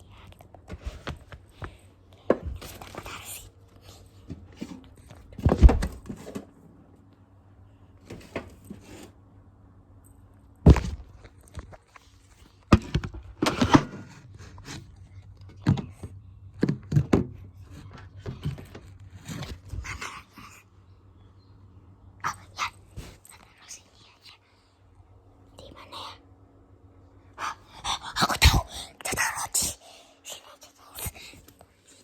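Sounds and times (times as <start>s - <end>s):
objects knocking and thudding: 4.3s - 6.5s, 10.7s - 11.8s, 12.7s - 14.2s.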